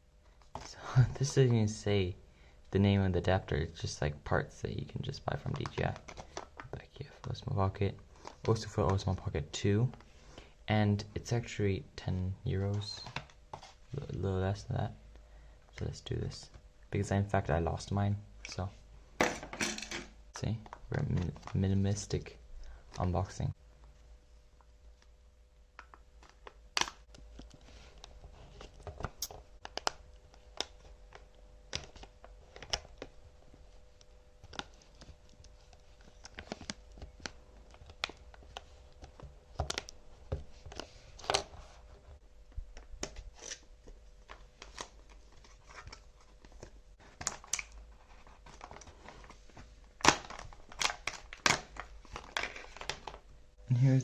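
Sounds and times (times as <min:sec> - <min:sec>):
packaging crinkling and tearing: 0:44.6 - 0:53.2.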